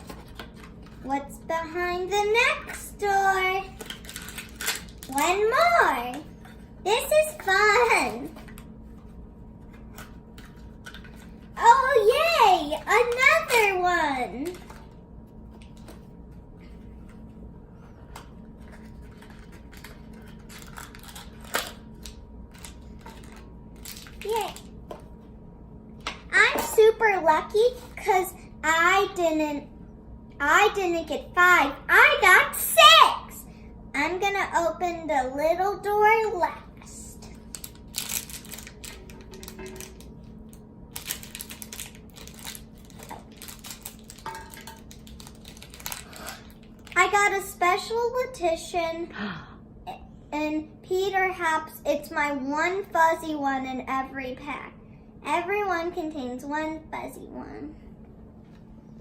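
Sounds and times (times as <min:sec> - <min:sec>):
packaging rustling: 0:37.4 - 0:40.1, 0:40.9 - 0:47.0
plastic and cardboard crinkling: 0:37.5 - 0:40.1, 0:40.9 - 0:47.0.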